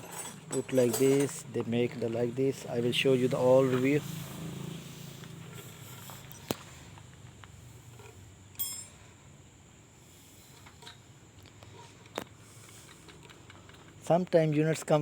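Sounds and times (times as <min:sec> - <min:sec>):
metal tools clinking: 0:00.0 - 0:04.0, 0:08.0 - 0:09.1
ringing metallic ping: 0:08.6 - 0:09.0.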